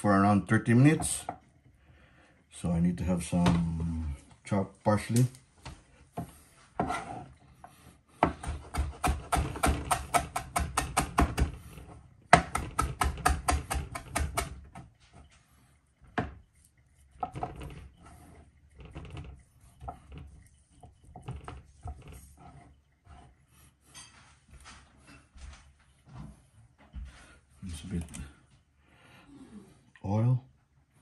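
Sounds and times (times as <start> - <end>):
knife chopping on a wooden board: 8.2 - 11.7, 12.3 - 14.9.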